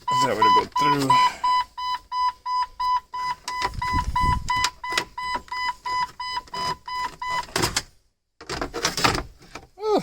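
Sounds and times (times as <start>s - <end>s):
dashboard warning chime beeping: 0.0s - 7.5s.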